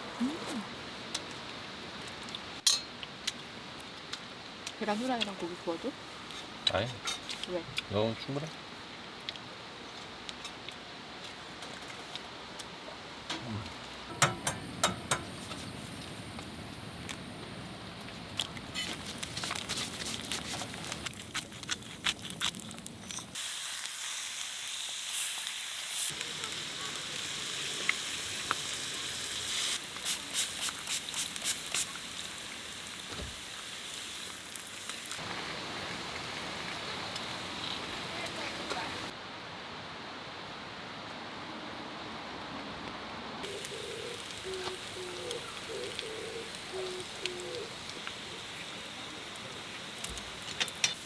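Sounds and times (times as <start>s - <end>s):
food sizzling in a pan: 22.6s - 39.1s, 43.4s - 51.0s.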